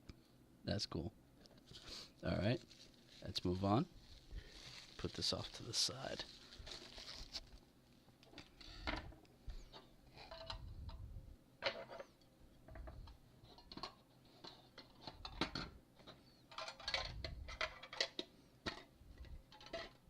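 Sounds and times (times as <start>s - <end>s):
packaging rustling: 1.6s - 7.6s.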